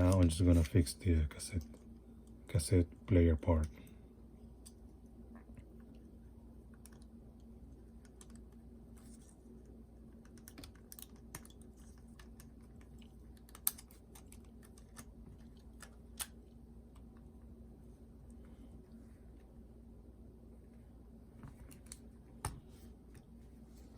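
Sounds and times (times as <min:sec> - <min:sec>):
faint hum: 0:00.0 - 0:23.9
small parts clicking and tapping: 0:06.7 - 0:08.6, 0:10.2 - 0:17.1.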